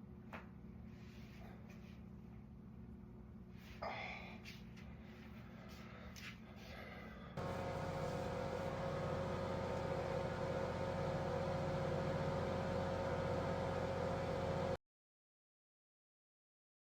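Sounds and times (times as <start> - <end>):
engine whine over pulsing drone: 7.4 - 14.8.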